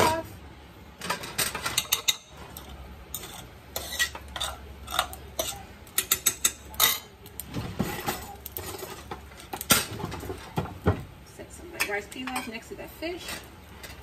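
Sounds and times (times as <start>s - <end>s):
spoon scraping and clinking in pot: 1.4s - 7.1s.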